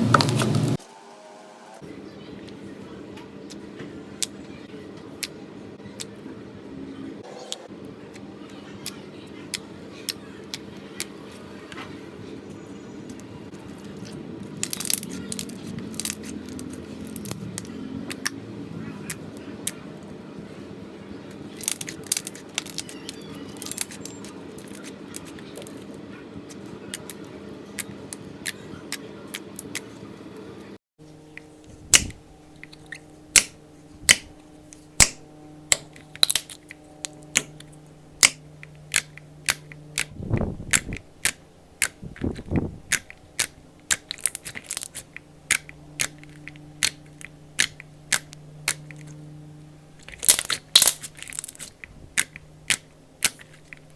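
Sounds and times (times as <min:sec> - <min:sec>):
low steady hum: 0:01.8 - 0:53.9
slime crackling and popping: 0:14.6 - 0:18.3, 0:21.5 - 0:24.0, 0:31.9 - 0:34.3, 0:35.0 - 0:40.1, 0:40.7 - 0:49.1, 0:50.0 - 0:53.9.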